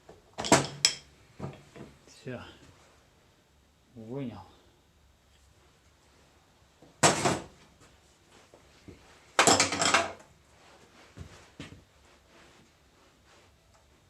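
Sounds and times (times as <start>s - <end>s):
metal parts clattering and scraping: 9.4s - 10.2s.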